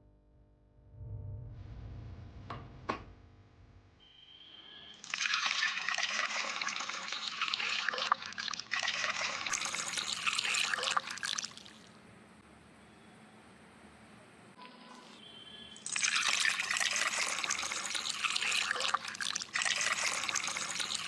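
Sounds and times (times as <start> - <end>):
water splashing and trickling: 5.0 - 12.0, 15.8 - 21.0.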